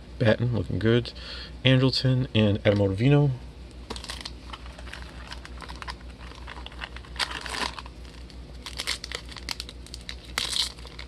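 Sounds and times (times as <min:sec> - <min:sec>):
foil wrapper crinkling and tearing: 0:03.9 - 0:11.0.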